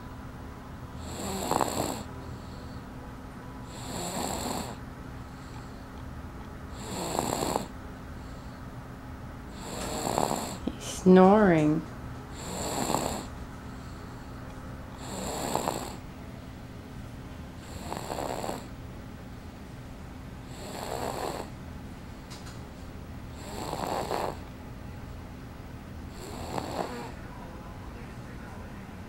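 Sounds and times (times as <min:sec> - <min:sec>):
baby snoring: 0:01.0 - 0:02.1, 0:03.7 - 0:04.8, 0:06.7 - 0:07.8, 0:09.5 - 0:11.3, 0:12.3 - 0:13.3, 0:15.0 - 0:16.0, 0:17.6 - 0:18.8, 0:20.5 - 0:21.6, 0:23.3 - 0:24.4, 0:26.1 - 0:27.2.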